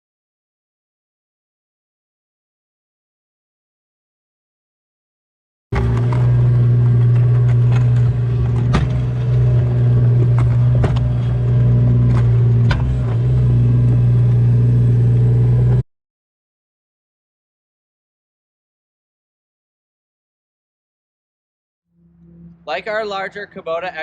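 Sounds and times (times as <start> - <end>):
diesel engine running: 5.8 - 15.8, 21.9 - 24.0.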